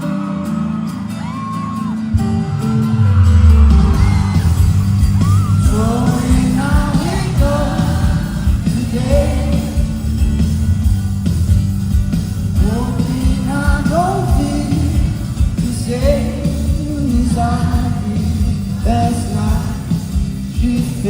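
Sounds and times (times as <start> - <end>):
person singing: 2.1 - 10.0, 12.6 - 19.9
deep bass: 2.1 - 21.0.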